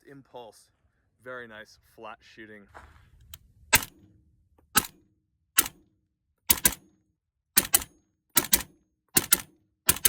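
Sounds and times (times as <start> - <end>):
suppressed rifle shots: 3.7 - 4.1, 4.7 - 5.9, 6.5 - 7.0, 7.6 - 10.0.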